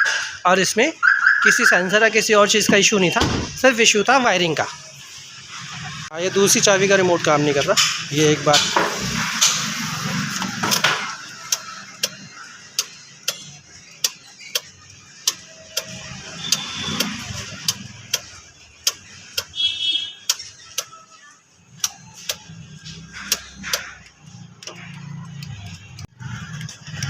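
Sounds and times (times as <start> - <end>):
indicator relay ticking: 10.3 - 27.0.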